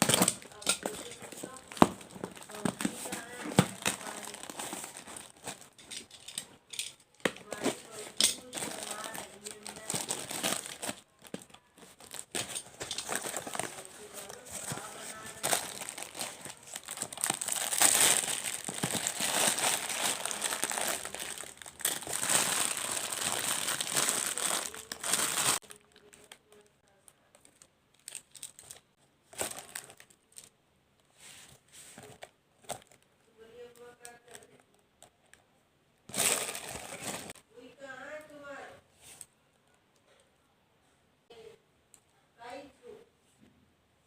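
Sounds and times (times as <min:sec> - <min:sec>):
plastic packaging crinkling and tearing: 0:00.0 - 0:06.5, 0:07.2 - 0:30.5, 0:36.1 - 0:37.4
rustles of handling: 0:00.0 - 0:26.4, 0:36.1 - 0:37.4.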